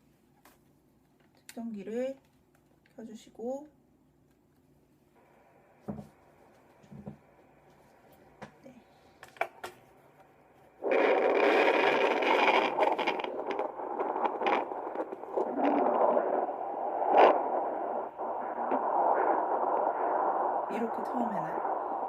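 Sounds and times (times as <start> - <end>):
loud hissing static: 5.2 - 22.0
probe scraping over gel: 10.8 - 18.9.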